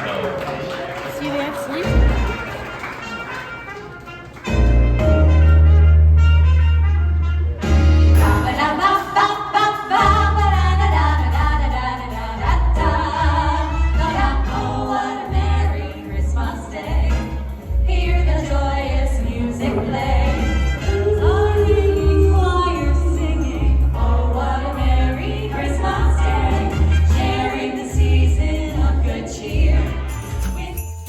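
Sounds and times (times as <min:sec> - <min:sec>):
choir singing over a beat: 0:08.2 - 0:31.0.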